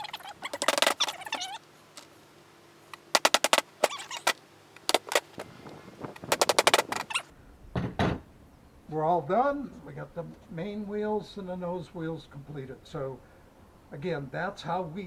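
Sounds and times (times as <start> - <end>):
rapid metallic taps: 2.9 - 7.2.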